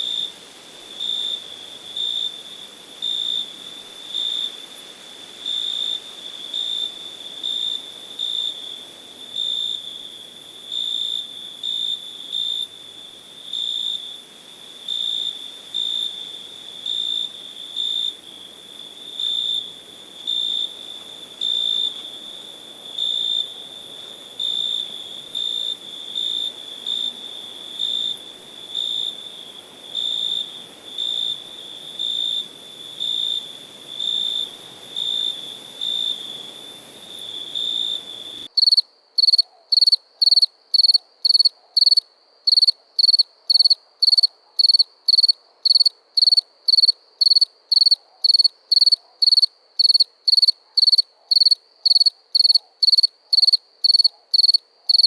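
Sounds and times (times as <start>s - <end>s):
crickets chirping: 0.0s - 55.0s
faint high hiss: 14.0s - 38.5s.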